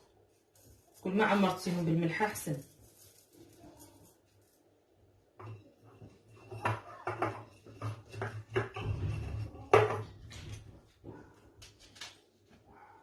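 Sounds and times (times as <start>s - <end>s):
knocks and clatters on a counter: 5.3s - 12.2s.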